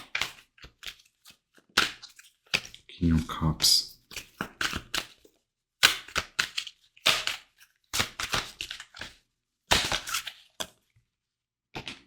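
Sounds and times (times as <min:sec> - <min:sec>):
cards shuffling and snapping: 0:00.0 - 0:02.8, 0:04.1 - 0:05.2, 0:05.8 - 0:10.8.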